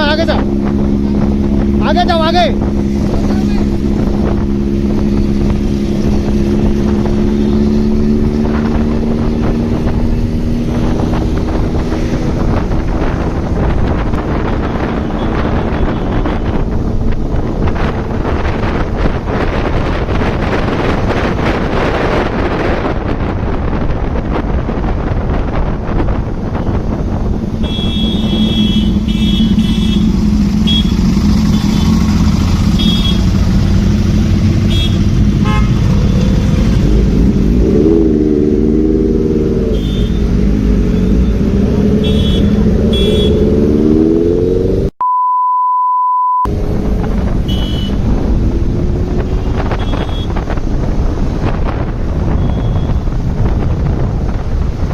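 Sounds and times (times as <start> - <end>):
wind buffeting microphone: 0.0 - 44.9, 46.5 - 54.9
motorcycle engine revving: 0.0 - 45.0, 46.5 - 54.9
horn toots: 27.6 - 33.4, 34.6 - 37.0, 39.6 - 43.8, 47.4 - 48.0, 49.2 - 50.5
one-tone bleep: 45.0 - 46.5.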